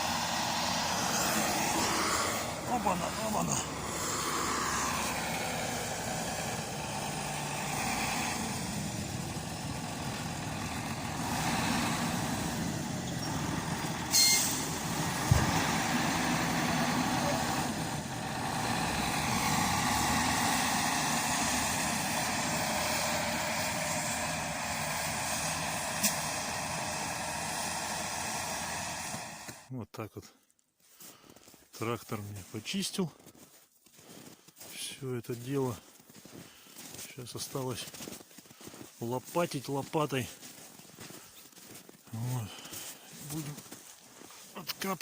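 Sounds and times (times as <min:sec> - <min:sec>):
heavy vehicle engine running: 0:00.0 - 0:29.7.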